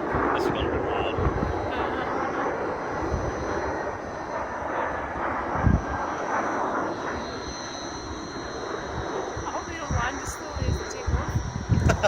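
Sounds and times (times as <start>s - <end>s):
faint high whine: 0.0s - 12.0s
jet engine rush: 0.0s - 12.0s.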